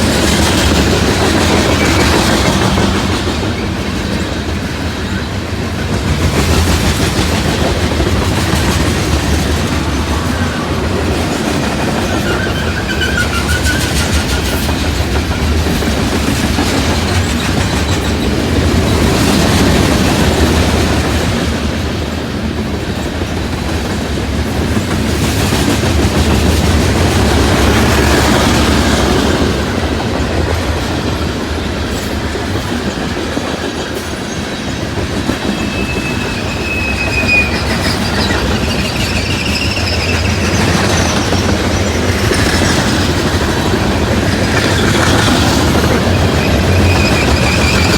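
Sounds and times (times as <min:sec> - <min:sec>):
freight train rumbling: 0:00.0 - 0:47.9
wheels clacking over rail joints: 0:00.0 - 0:47.9
thin wheel squeals: 0:12.2 - 0:14.2, 0:35.5 - 0:42.6, 0:46.1 - 0:47.9.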